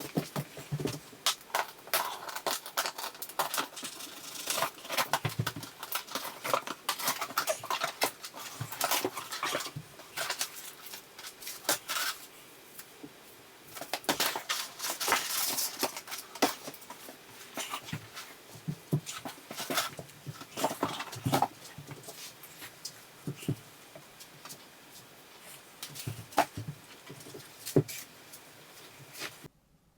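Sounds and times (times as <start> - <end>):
packaging rustling and scraping: 0.0 - 12.3, 13.7 - 23.6.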